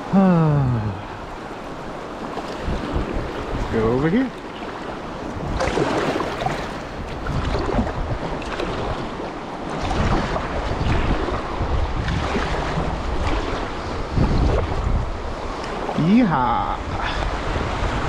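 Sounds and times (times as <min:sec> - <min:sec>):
wind buffeting microphone: 0:00.8 - 0:18.0.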